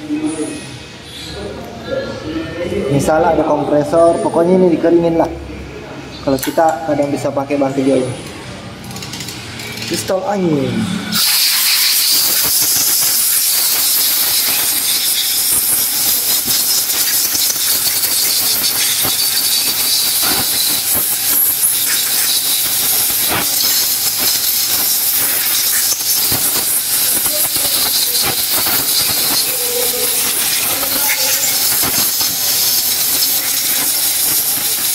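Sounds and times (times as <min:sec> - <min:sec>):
air blow gun hissing: 0:10.6 - 0:34.9.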